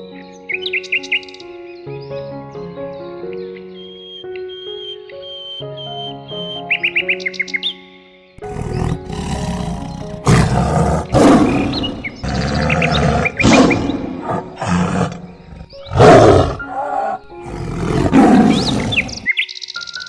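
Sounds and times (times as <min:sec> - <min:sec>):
background music: 0:00.0 - 0:20.0
big cat roaring and growling: 0:08.4 - 0:19.3.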